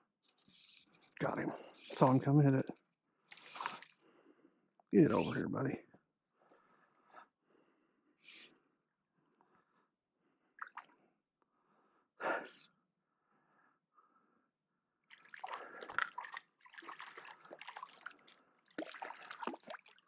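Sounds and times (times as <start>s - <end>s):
water splashing and dripping: 3.3s - 4.0s, 10.6s - 10.9s, 15.1s - 20.0s.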